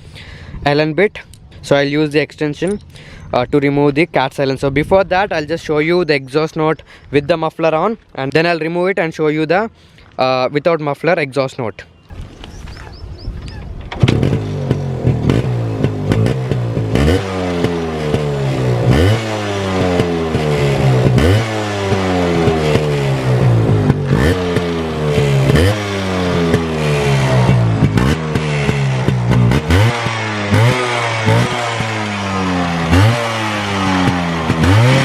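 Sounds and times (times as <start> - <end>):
motorcycle throttle blips: 12.2 - 35.0
motorcycle engine idling: 14.0 - 35.0.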